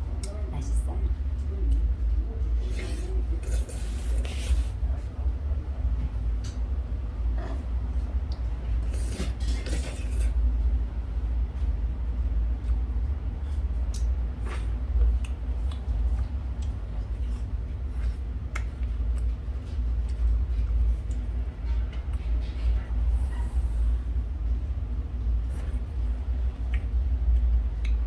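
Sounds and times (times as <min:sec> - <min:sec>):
steady low rumble: 0:00.0 - 0:28.0
slurping noodles: 0:02.7 - 0:04.8.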